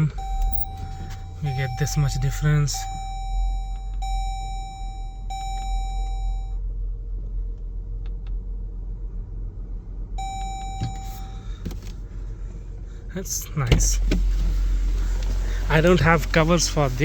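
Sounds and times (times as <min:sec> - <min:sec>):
vehicle warning chime: 0:00.0 - 0:06.6, 0:10.2 - 0:11.6
steady low rumble: 0:00.0 - 0:17.0.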